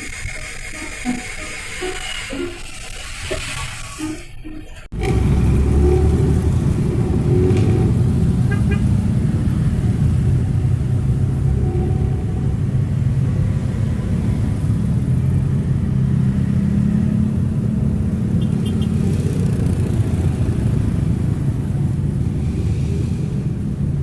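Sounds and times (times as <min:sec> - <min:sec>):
bus exhaust deep rumble: 0:04.8 - 0:24.0.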